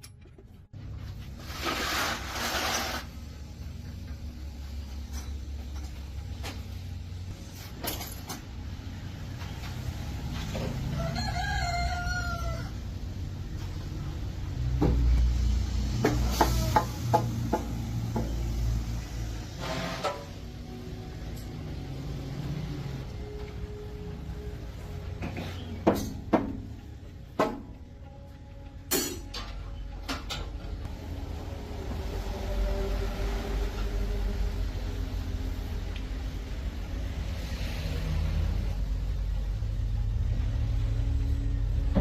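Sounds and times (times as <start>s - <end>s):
rooster crowing: 10.6s - 13.0s.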